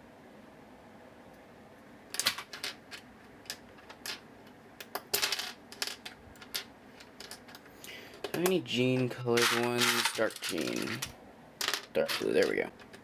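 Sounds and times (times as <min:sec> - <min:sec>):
small plastic parts clicking: 0:02.2 - 0:13.0.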